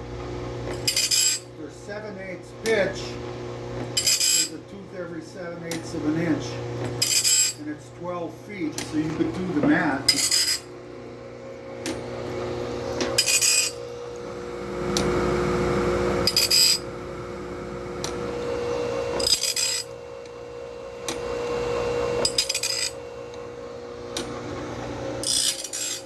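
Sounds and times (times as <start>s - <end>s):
motors humming: 2.0s - 26.0s
grinding wheel metallic rasps: 4.0s - 4.6s, 7.0s - 7.7s, 10.1s - 10.7s, 13.1s - 13.9s, 14.6s - 18.4s, 19.2s - 20.0s, 22.2s - 23.0s, 25.2s - 26.0s.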